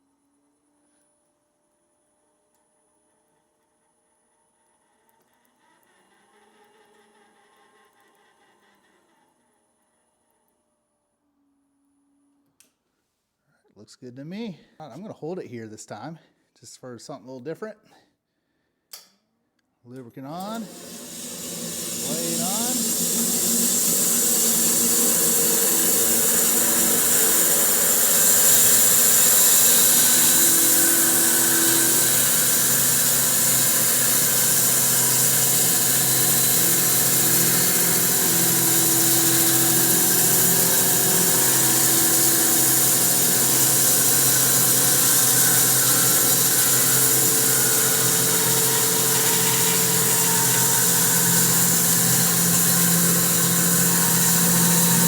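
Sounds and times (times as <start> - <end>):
bandsaw sawing a log: 20.4 - 55.0.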